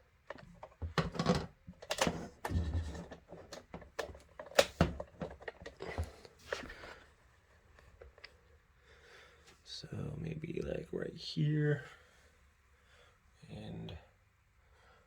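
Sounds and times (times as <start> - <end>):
objects knocking and rustling: 0.2 - 7.0.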